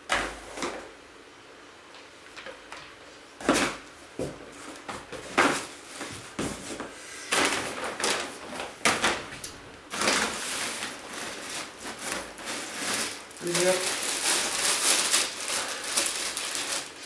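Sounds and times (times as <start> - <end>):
rummaging and packing items: 2.4 - 17.0.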